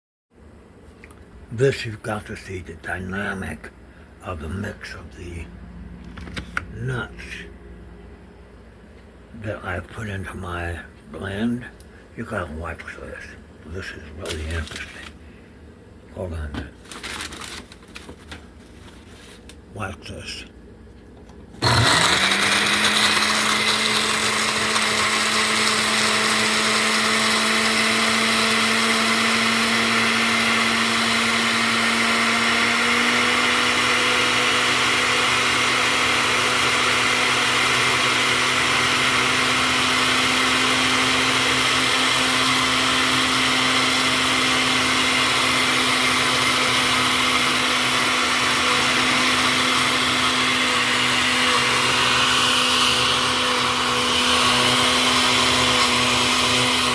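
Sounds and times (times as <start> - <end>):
blender grinding nuts: 21.6 - 56.9.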